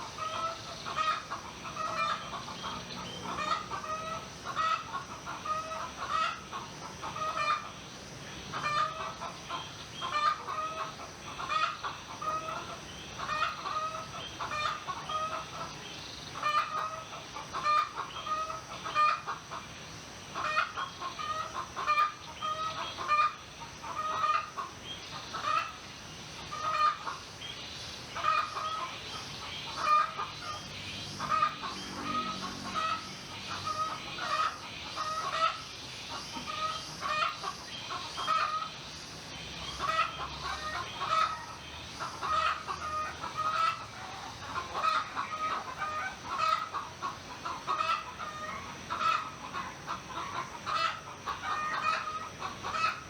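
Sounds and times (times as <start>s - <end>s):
chickens clucking: 0.0s - 7.8s, 8.5s - 27.3s, 28.1s - 53.0s.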